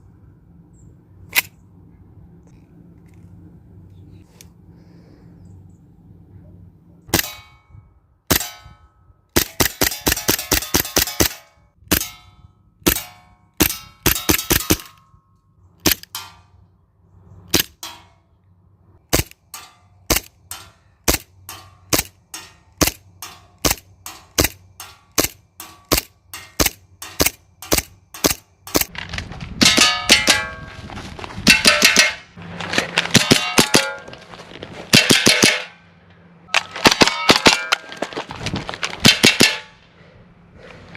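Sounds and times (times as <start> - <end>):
metallic clanging and ringing: 19.5 - 28.8, 29.6 - 30.8.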